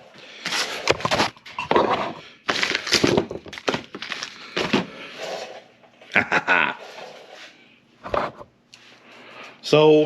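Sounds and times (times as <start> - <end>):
crinkling and rustling: 0.4 - 5.7.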